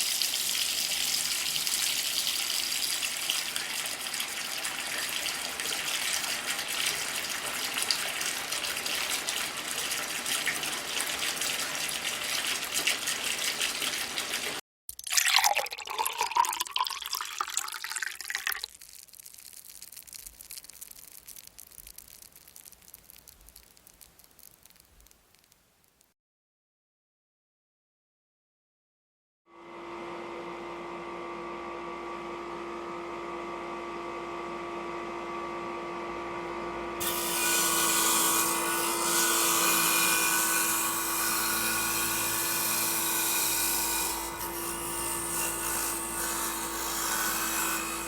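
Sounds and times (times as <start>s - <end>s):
water running from a tap: 0.0s - 24.9s
faint crackling: 18.6s - 26.1s.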